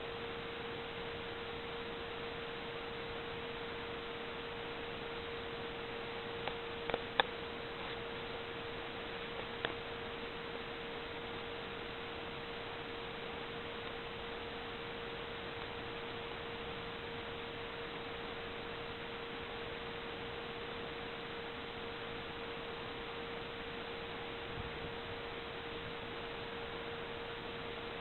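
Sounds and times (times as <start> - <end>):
even hum-like tone: 0.0 - 28.0
steady hiss: 0.0 - 28.0.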